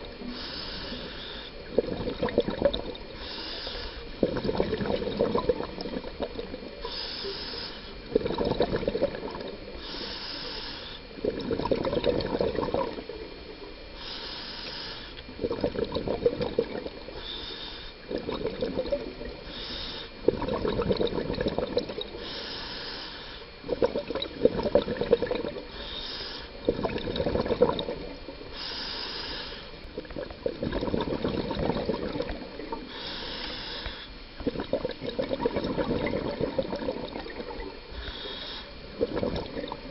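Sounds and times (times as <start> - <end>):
regulator inhale hiss: 0.0 - 1.7, 3.0 - 4.2, 6.7 - 8.1, 9.6 - 11.2, 13.2 - 15.4, 17.0 - 18.3, 19.3 - 20.3, 22.0 - 23.7, 25.6 - 26.7, 28.0 - 30.1, 32.3 - 34.4, 37.8 - 39.1
exhaled bubbles rushing: 1.6 - 3.2, 4.2 - 6.8, 8.0 - 9.7, 11.2 - 13.3, 15.3 - 17.2, 18.0 - 19.4, 20.2 - 22.2, 23.6 - 25.7, 26.6 - 28.5, 29.9 - 32.9, 34.4 - 37.9, 38.9 - 39.9.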